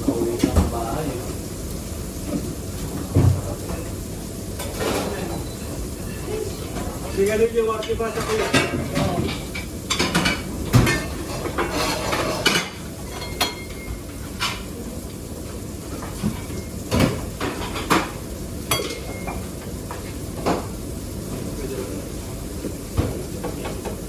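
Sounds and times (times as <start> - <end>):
metal pots and pans clattering: 7.2 - 14.7.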